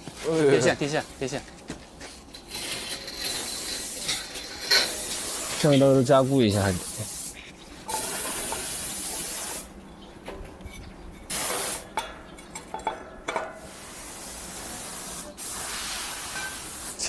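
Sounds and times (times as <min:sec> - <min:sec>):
hissing spray bursts: 0:02.6 - 0:09.7, 0:11.3 - 0:11.9, 0:13.6 - 0:17.0.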